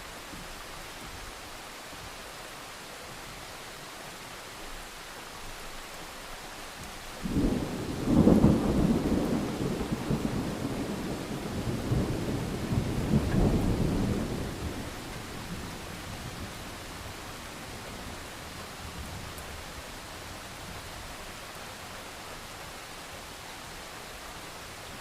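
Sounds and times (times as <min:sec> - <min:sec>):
steady rain: 0:00.0 - 0:25.0
thunder rumbling: 0:07.2 - 0:18.2.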